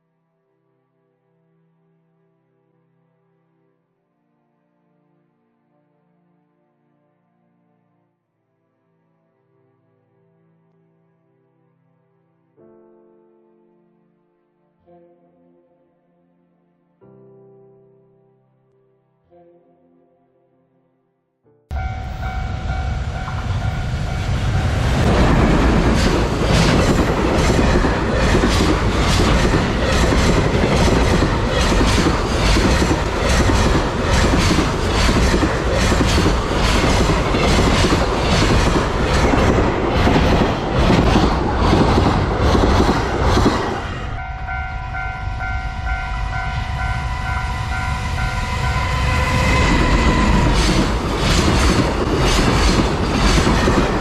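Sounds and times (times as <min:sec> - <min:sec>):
crossing warning bell ringing: 0:21.7 - 0:25.2, 0:44.1 - 0:51.1
train wheels clattering on rails: 0:21.8 - 0:43.8, 0:48.7 - 0:54.0.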